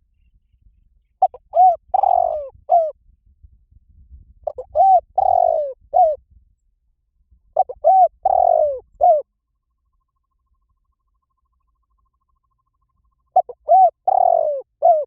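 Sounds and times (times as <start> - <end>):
dove cooing: 1.2 - 3.0, 4.4 - 6.2, 7.5 - 9.2, 13.3 - 15.0.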